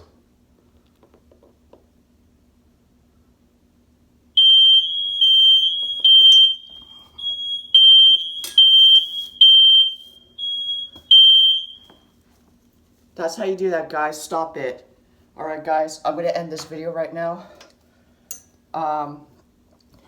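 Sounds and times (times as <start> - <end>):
smoke detector alarm shriek: 4.4 - 12.1.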